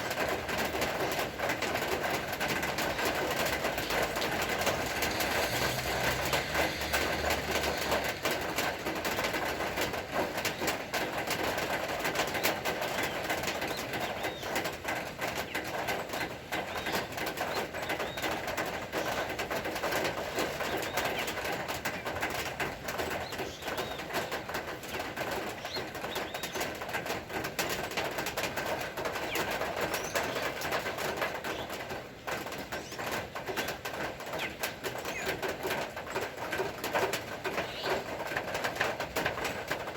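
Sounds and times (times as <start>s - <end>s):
steady rain falling: 0.0s - 39.9s
small birds chirping: 10.4s - 27.0s, 27.8s - 36.3s, 37.4s - 38.6s.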